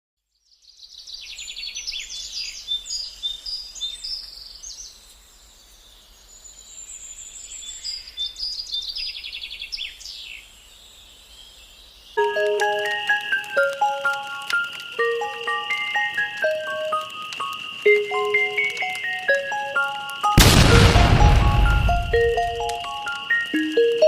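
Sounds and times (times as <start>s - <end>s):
music: 12.2s - 24.0s.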